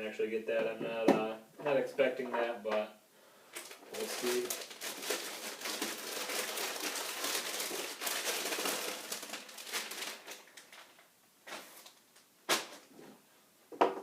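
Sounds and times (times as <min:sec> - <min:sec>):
plastic packaging crinkling: 0:03.5 - 0:12.8.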